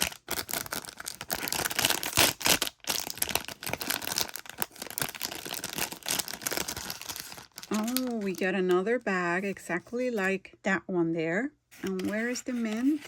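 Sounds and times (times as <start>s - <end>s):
plastic wrapper being torn and crinkled: 0.0s - 8.6s.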